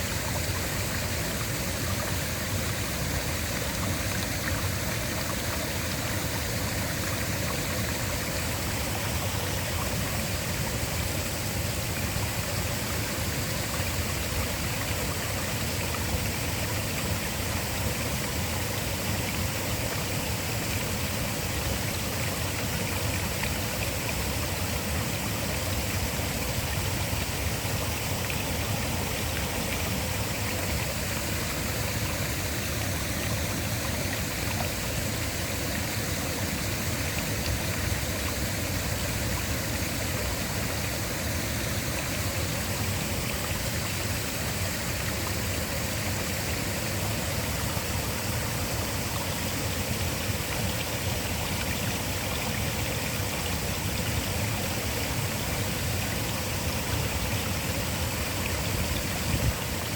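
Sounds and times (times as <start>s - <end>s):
waterfall rushing: 18.2s - 59.9s.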